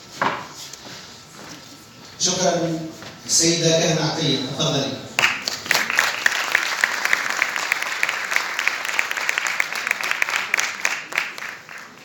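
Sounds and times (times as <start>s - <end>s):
audience applauding: 5.2s - 12.0s.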